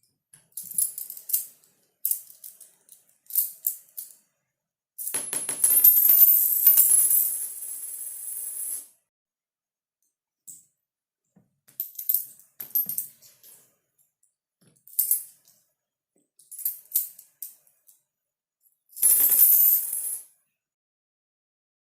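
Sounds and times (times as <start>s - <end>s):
coins clinking on hard surface: 0.6s - 4.2s, 5.0s - 8.9s, 11.7s - 13.7s, 14.8s - 15.5s, 16.4s - 17.7s, 19.0s - 20.4s.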